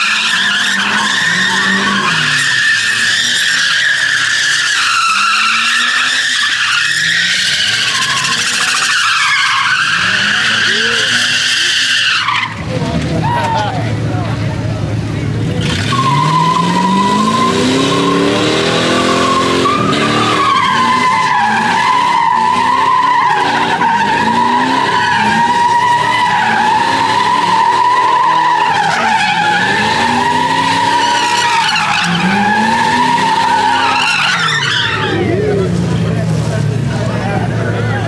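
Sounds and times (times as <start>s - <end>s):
tyres squealing: 0.0s - 14.0s, 15.5s - 38.0s
engine revving: 15.4s - 38.0s.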